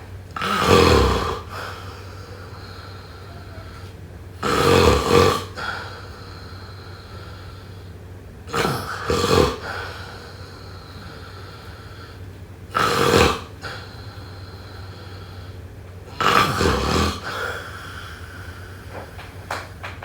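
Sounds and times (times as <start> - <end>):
person snoring: 0.4 - 7.9, 8.5 - 19.2
quiet breath out: 1.4 - 4.0, 5.5 - 8.0, 8.8 - 12.4, 13.6 - 15.8.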